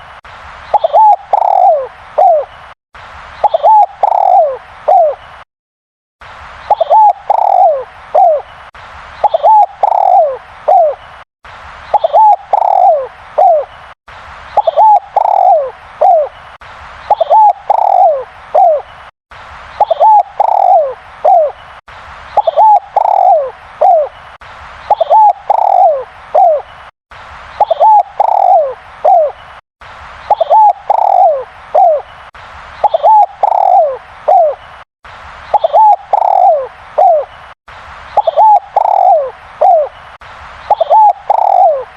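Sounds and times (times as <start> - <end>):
dove cooing: 0.7 - 2.5, 3.4 - 5.2, 6.7 - 8.4, 9.2 - 11.0, 11.9 - 13.7, 14.6 - 16.3, 17.1 - 18.8, 19.8 - 21.6, 22.4 - 24.1, 24.9 - 26.6, 27.6 - 29.4, 30.3 - 32.0, 32.8 - 34.6, 35.5 - 37.3, 38.2 - 39.9, 40.7 - 41.9.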